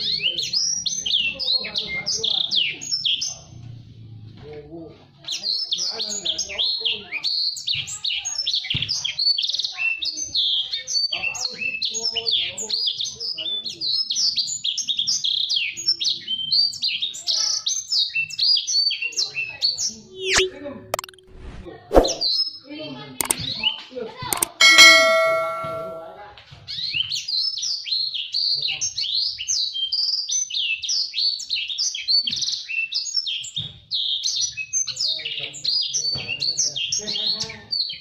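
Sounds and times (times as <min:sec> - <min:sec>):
canary singing twittering song: 0:27.1 - 0:38.0.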